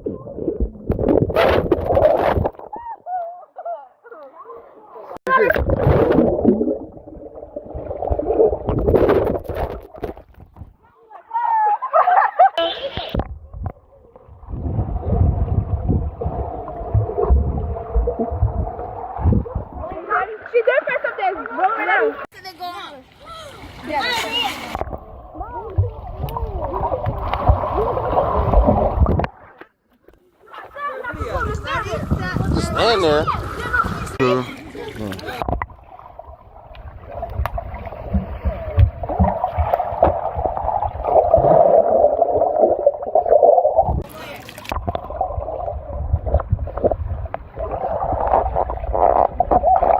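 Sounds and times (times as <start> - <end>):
low underwater thumps: 0.0 - 2.8, 5.4 - 10.8, 13.0 - 20.0, 35.1 - 49.9
pool water sloshing and gurgling: 0.0 - 49.9.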